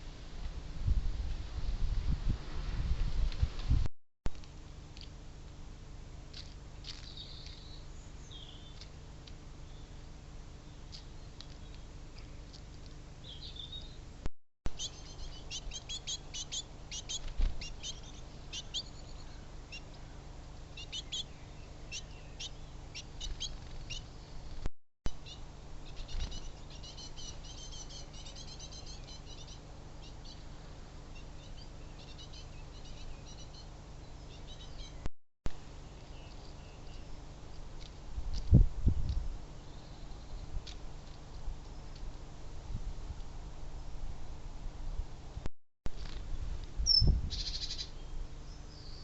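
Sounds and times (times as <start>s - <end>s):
small birds chirping: 6.4s - 9.0s, 9.6s - 14.1s, 14.7s - 35.1s, 35.7s - 38.0s, 38.8s - 42.0s, 46.8s - 49.0s.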